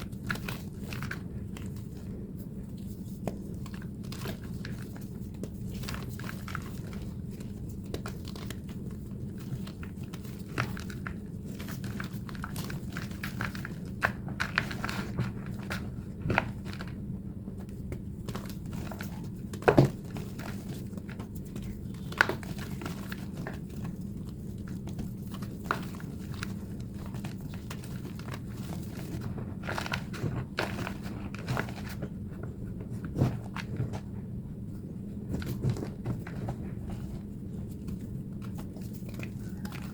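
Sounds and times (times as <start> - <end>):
steady low hum: 0.0 - 39.9.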